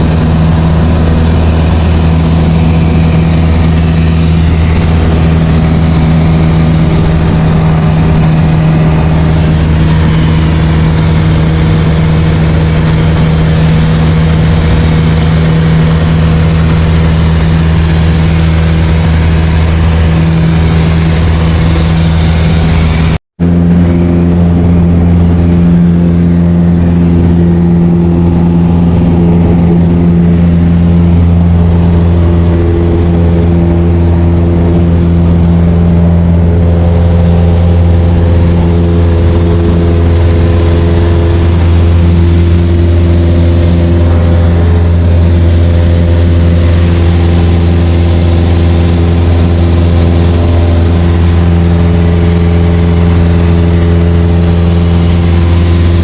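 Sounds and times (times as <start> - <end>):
light aircraft engine drone: 0.0 - 56.0.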